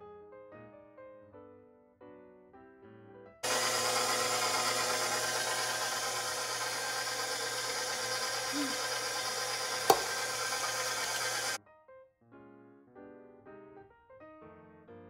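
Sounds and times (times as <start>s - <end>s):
electric mixer running: 3.4s - 11.6s.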